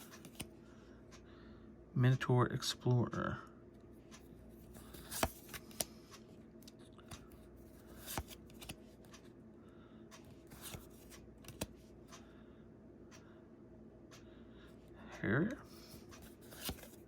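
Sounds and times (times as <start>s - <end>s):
cards sliding and rustling: 0.0s - 0.5s, 4.6s - 9.2s, 10.3s - 11.8s, 15.7s - 17.0s
faint steady hum: 0.0s - 17.0s
cards clicking as laid down: 4.8s - 5.9s, 7.9s - 8.8s, 10.5s - 11.8s, 16.4s - 17.0s.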